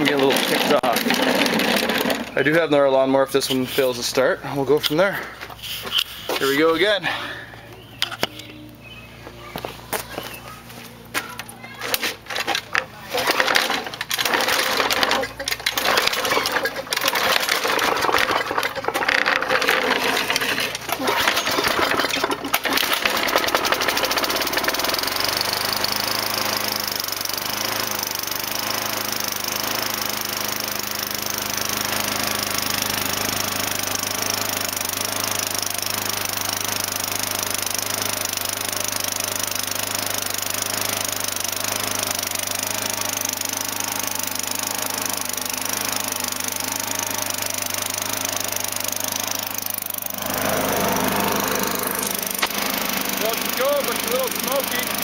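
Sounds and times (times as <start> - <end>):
lawnmower engine starting and running: 0.0 - 55.0.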